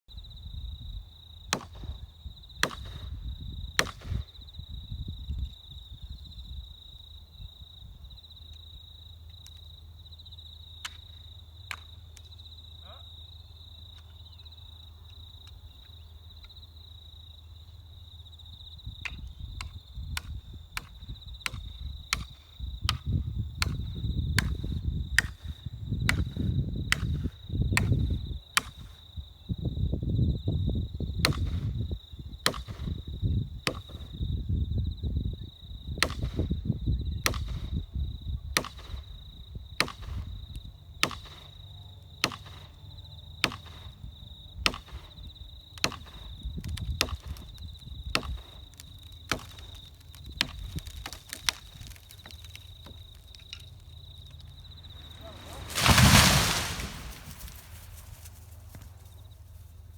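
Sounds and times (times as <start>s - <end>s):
axe chopping dry wood: 1.5s - 1.9s, 2.6s - 3.0s, 3.8s - 4.2s, 19.1s - 28.9s, 31.2s - 31.6s, 32.5s - 32.9s, 36.0s - 36.4s, 37.2s - 37.6s, 39.8s - 40.2s, 41.0s - 41.5s, 42.2s - 42.7s, 44.6s - 45.1s, 45.8s - 47.4s, 48.1s - 53.0s.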